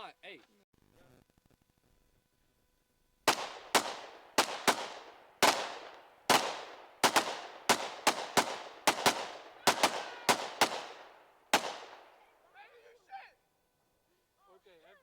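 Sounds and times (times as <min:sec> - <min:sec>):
gunshots echoing: 0:03.3 - 0:12.3.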